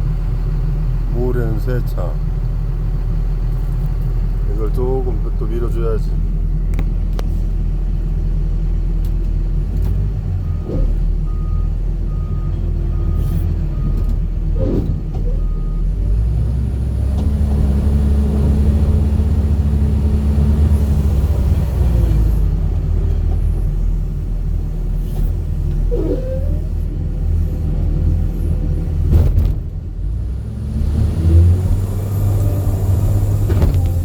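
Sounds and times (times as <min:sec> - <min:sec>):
heavy diesel engine running: 0:00.0 - 0:34.0.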